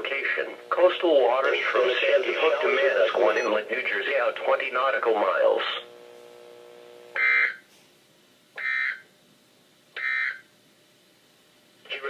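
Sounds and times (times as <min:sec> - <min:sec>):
digital data tone bursts: 0:01.5 - 0:03.8.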